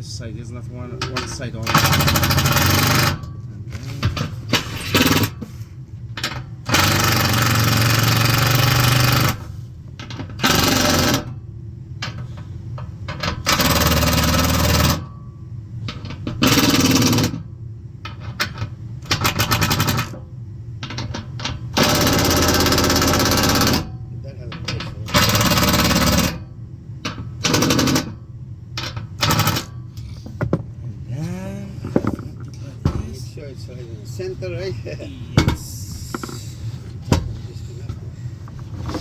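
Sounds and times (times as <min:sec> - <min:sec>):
impact driver rattling: 0:01.1 - 0:03.4, 0:04.0 - 0:05.5, 0:06.2 - 0:11.4, 0:13.1 - 0:15.1, 0:15.9 - 0:17.4, 0:18.1 - 0:20.2, 0:20.8 - 0:23.9, 0:24.6 - 0:28.2, 0:28.8 - 0:29.7.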